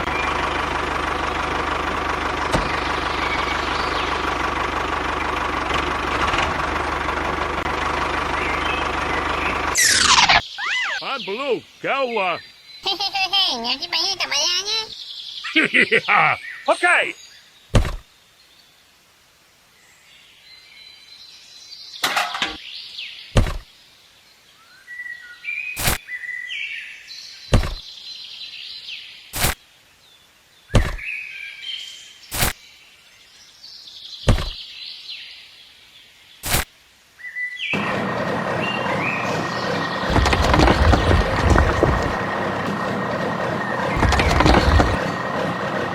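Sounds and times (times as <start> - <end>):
birds chirping: 0.0 - 5.6, 6.6 - 19.0, 19.9 - 36.6, 37.2 - 45.9
sharp knocks: 17.7 - 18.0, 23.4 - 23.6, 27.5 - 27.8, 30.8 - 31.0, 34.3 - 34.6, 40.1 - 42.8, 44.0 - 45.0.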